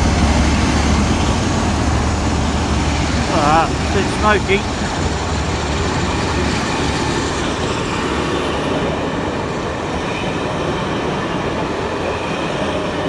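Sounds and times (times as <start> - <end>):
diesel engine noise: 0.0 - 9.6
train wheels rolling: 0.0 - 13.0.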